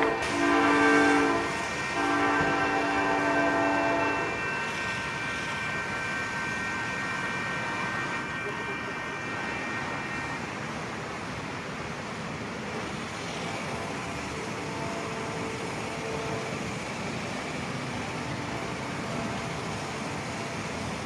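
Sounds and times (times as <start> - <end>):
locomotive air horn chord: 0.0 - 10.5
passenger train running past: 0.0 - 21.0.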